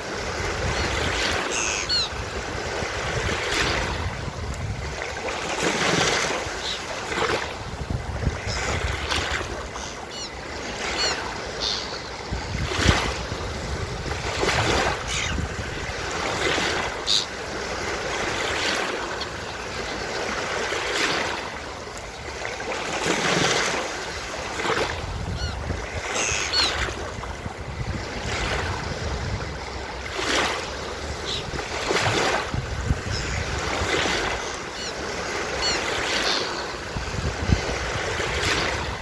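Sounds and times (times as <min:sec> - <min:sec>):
ocean surf breaking: 0:00.0 - 0:39.0
faint seagull calls: 0:00.7 - 0:02.2, 0:06.5 - 0:07.0, 0:09.7 - 0:12.3, 0:15.0 - 0:15.4, 0:17.0 - 0:17.4, 0:25.3 - 0:27.0, 0:31.2 - 0:31.5, 0:34.2 - 0:36.8.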